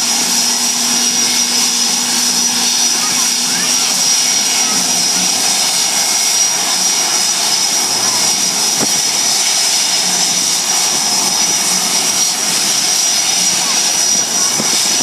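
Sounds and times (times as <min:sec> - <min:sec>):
high-pitched turbine whine: 0:00.0 - 0:15.0
jet engines rushing: 0:00.0 - 0:15.0.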